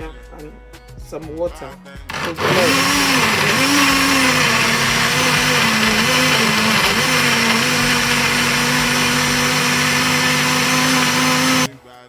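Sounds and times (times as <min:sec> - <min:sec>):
blender motor running: 0:02.1 - 0:11.7.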